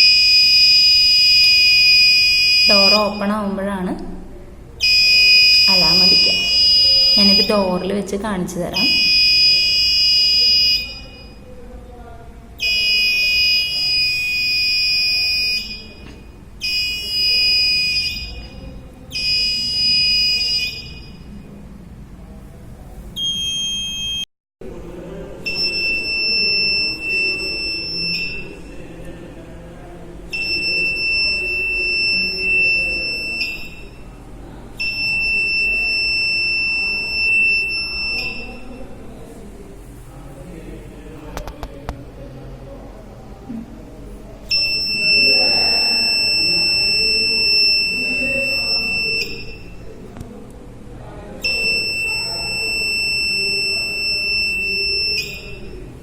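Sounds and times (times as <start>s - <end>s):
high-pitched alarm buzzer: 0.0s - 3.6s, 4.8s - 7.8s, 8.8s - 11.4s, 12.6s - 21.3s, 25.5s - 28.6s, 30.3s - 34.1s, 34.8s - 38.9s, 44.5s - 49.9s, 51.4s - 55.8s.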